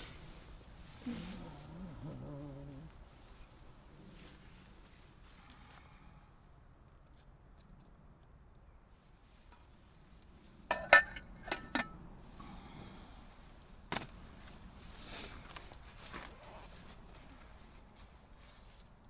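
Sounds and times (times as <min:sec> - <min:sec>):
cookware clinking: 0:10.7 - 0:12.0.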